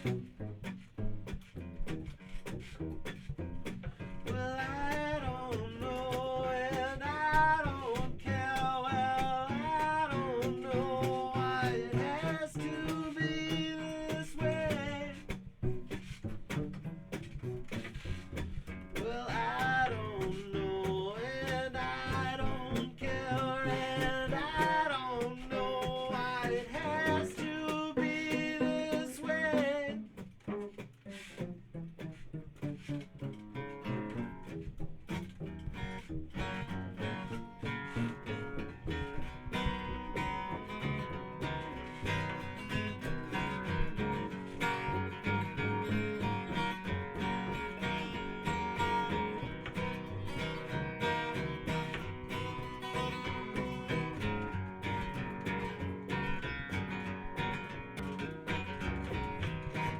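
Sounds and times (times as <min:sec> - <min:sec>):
acoustic guitar: 0:00.0 - 0:59.9
bass playing: 0:00.0 - 0:59.9
wordless singing: 0:04.2 - 0:15.4, 0:19.0 - 0:30.2.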